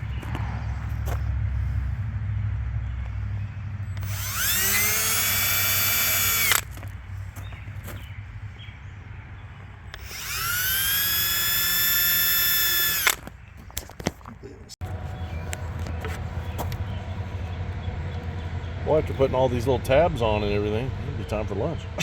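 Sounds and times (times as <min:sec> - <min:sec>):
electric drill whining: 0:03.9 - 0:06.8, 0:09.9 - 0:13.3.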